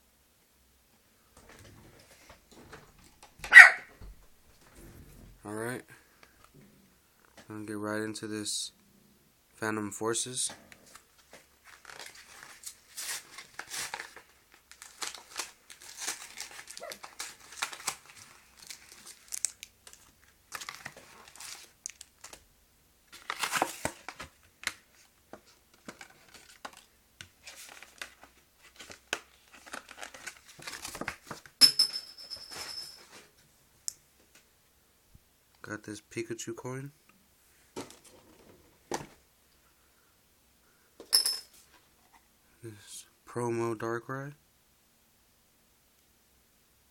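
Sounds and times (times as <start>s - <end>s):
packaging crinkling and tearing: 10.9s - 22.4s, 23.1s - 31.5s.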